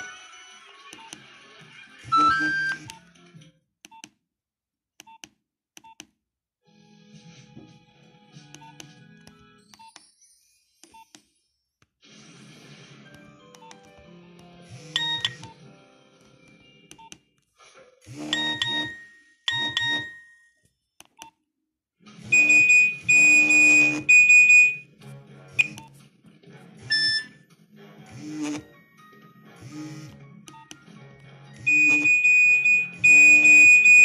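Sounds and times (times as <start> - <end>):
mobile phone ringtone beeping: 0.0 - 0.4, 2.0 - 3.0, 14.9 - 15.6, 18.2 - 20.5, 22.3 - 24.9, 25.6 - 25.9, 26.9 - 27.4, 31.6 - 34.0.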